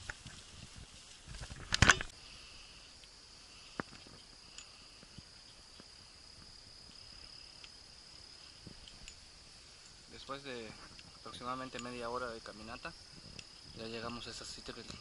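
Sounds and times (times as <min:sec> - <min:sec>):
loud rustle: 0:00.0 - 0:02.2
insects buzzing: 0:00.0 - 0:15.0.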